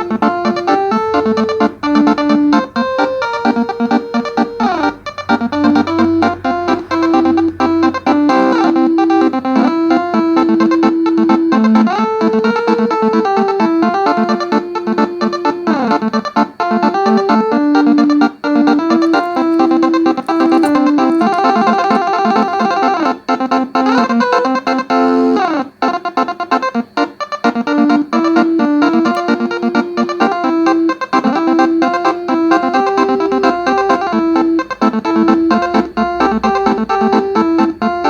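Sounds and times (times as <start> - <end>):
musical air horns melody: 0.0 - 12.2, 17.9 - 23.1, 28.1 - 38.0.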